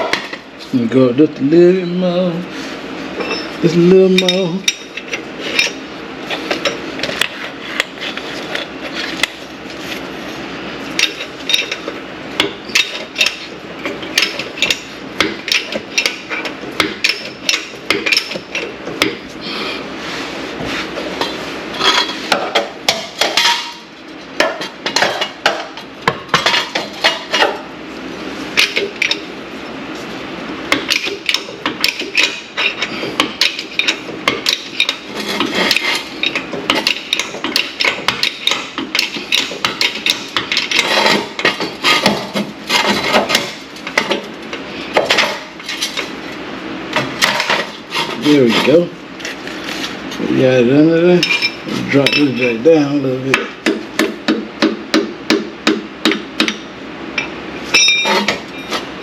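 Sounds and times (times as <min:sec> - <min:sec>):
hand tools clinking on metal: 0:03.2 - 0:05.8, 0:51.2 - 0:52.6, 0:57.2 - 0:58.8.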